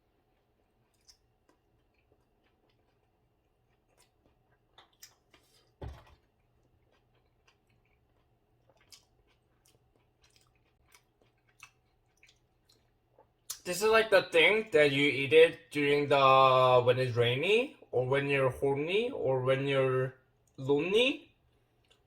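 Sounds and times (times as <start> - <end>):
faint chewing: 0.0 - 13.6, 21.4 - 22.0.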